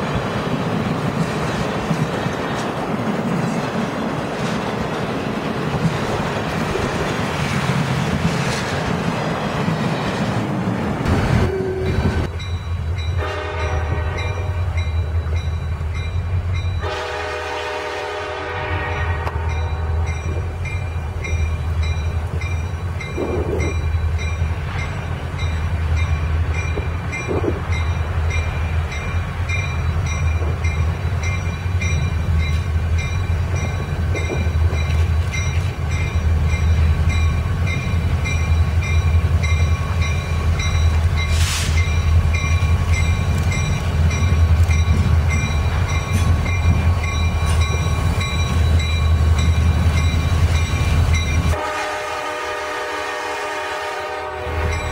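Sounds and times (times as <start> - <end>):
locomotive rumble: 0.0 - 54.9
train wheel noise: 0.0 - 54.9
brief hiss: 41.3 - 42.0.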